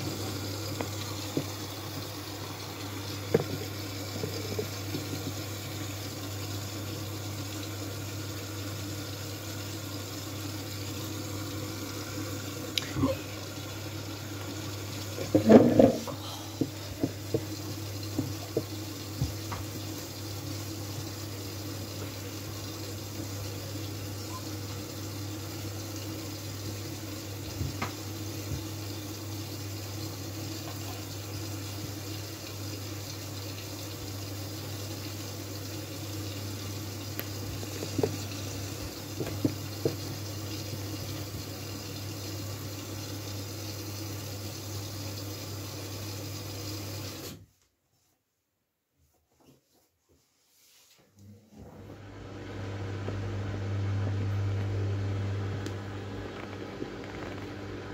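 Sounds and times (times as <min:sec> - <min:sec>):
water sloshing in washing machine: 0:00.0 - 0:47.4
washing machine hum: 0:00.0 - 0:48.1, 0:49.0 - 0:57.9.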